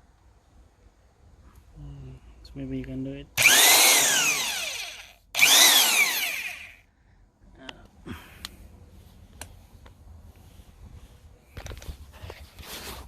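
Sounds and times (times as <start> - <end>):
impact wrench motor whine: 3.4 - 6.8.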